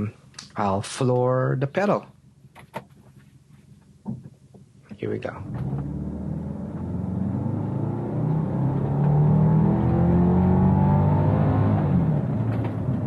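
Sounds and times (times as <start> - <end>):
car engine accelerating: 5.4 - 13.0.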